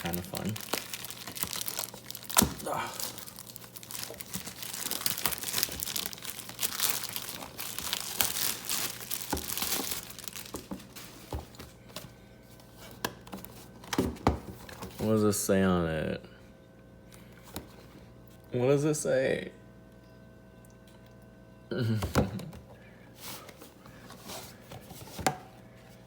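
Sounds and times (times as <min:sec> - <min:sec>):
packaging crinkling and tearing: 0:00.0 - 0:12.1.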